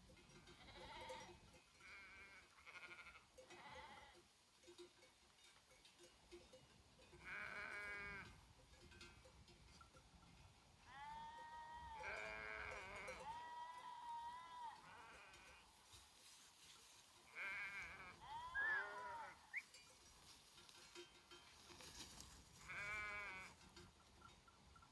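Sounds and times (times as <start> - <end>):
sheep bleating: 0.6 - 4.2, 7.2 - 8.4, 10.9 - 15.7, 17.3 - 19.6, 22.6 - 23.6.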